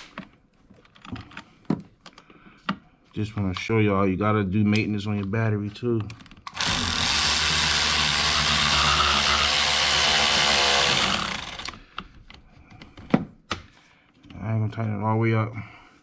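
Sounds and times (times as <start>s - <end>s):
cordless power tool motor running: 6.5s - 11.8s.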